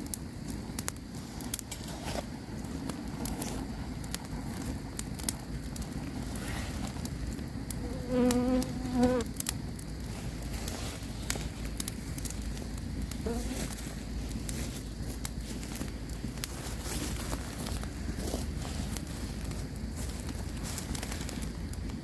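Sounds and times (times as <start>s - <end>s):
campfire crackling and popping: 0.0s - 22.0s
flying insect buzzing: 7.8s - 9.3s, 13.2s - 13.6s.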